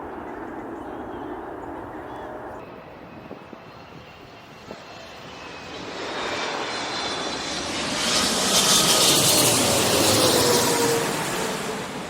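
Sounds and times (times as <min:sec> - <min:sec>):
jet engines approaching: 0:00.0 - 0:12.0.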